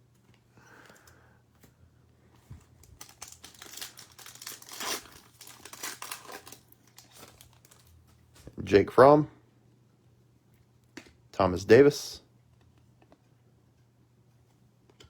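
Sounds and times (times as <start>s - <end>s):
foil wrapper crinkling and tearing: 2.6s - 8.0s.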